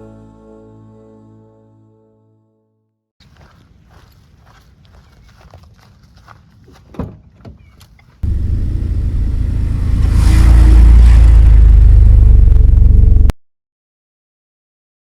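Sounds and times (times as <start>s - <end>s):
low vehicle engine rumble: 8.2s - 13.3s.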